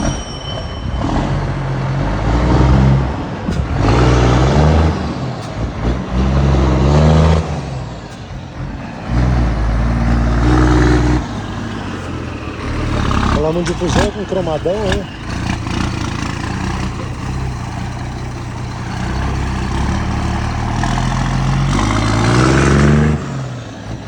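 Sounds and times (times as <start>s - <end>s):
truck diesel engine revving: 1.0s - 24.0s.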